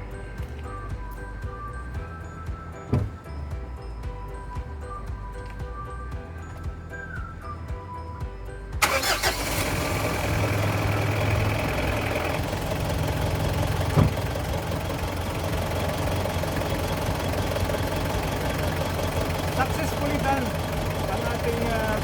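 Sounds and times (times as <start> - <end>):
diesel car engine starting and idling: 0.0 - 22.0
short knock: 2.9 - 3.2.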